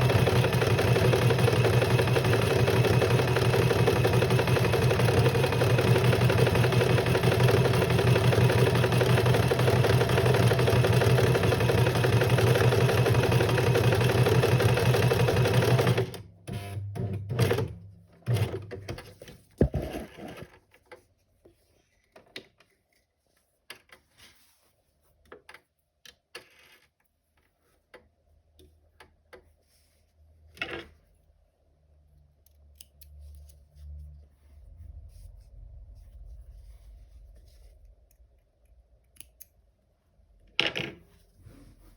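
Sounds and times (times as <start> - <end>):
sewing machine stitching: 0.0 - 17.7, 18.3 - 19.0.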